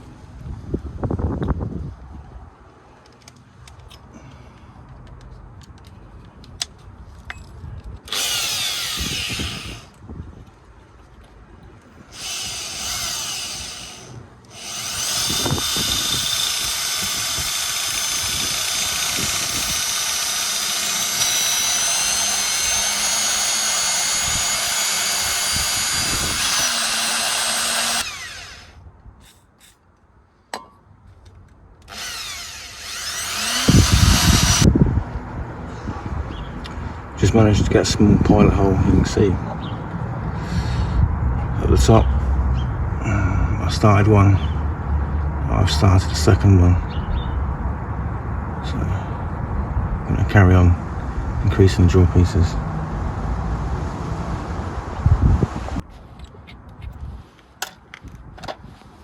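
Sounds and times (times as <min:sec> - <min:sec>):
power drill boring into metal: 0:08.1 - 0:09.9, 0:12.1 - 0:29.4, 0:31.9 - 0:34.7.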